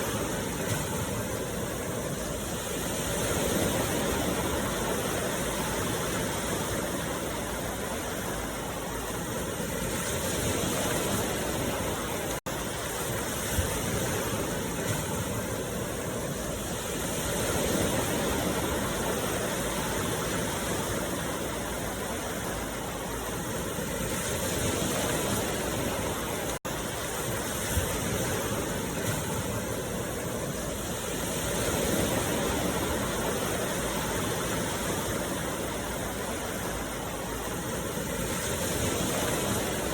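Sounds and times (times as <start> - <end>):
steady rushing noise: 0.0 - 39.9.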